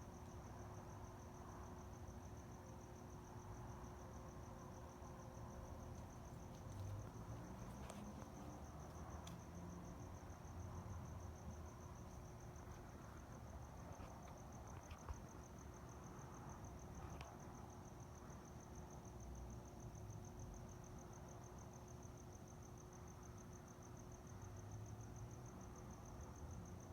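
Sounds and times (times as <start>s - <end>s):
cricket chirping: 0.0s - 26.9s.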